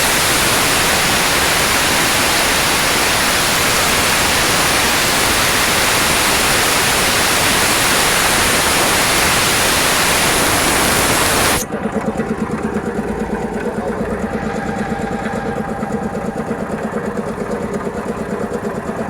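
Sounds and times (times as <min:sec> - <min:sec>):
compressed air hissing from valve: 0:00.0 - 0:11.6.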